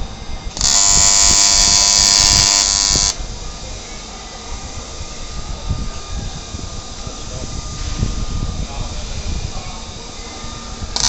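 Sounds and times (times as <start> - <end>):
welding arc buzzing: 0.0 - 3.8, 10.0 - 11.0.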